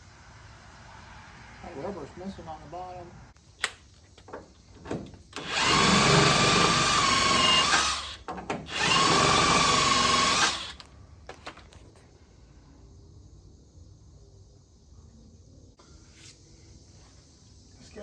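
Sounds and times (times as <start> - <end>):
power tool whining: 5.4 - 10.9.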